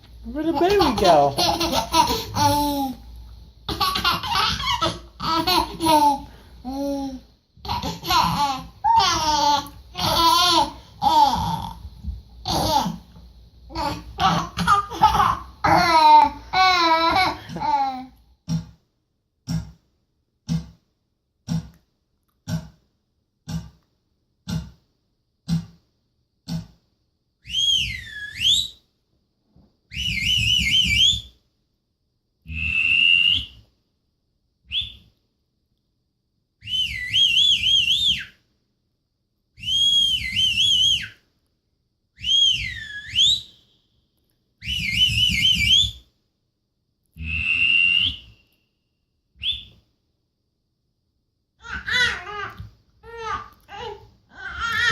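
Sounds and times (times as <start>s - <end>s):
whistled pitch glides: 27.4s - 28.8s, 29.9s - 31.3s, 32.5s - 33.6s, 34.7s - 35.0s, 36.6s - 38.4s, 39.6s - 41.2s, 42.2s - 43.9s, 44.6s - 46.0s, 47.2s - 48.8s, 49.4s - 49.8s.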